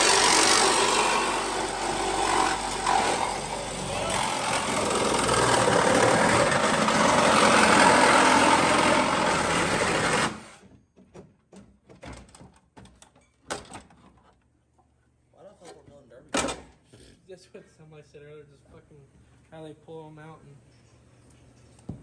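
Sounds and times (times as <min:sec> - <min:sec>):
reciprocating saw cutting steel: 0:00.0 - 0:10.6.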